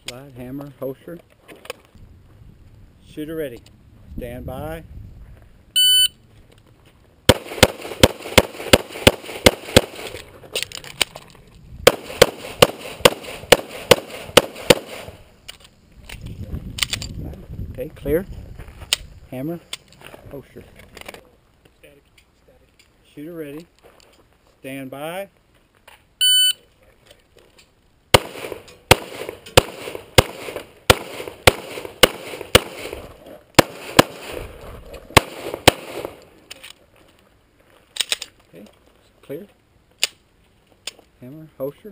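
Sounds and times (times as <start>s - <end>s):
shot timer beep: 5.8s - 6.2s, 26.2s - 26.6s
pistol shots: 7.3s - 10.2s, 11.8s - 15.2s, 28.1s - 34.4s, 35.1s - 36.2s.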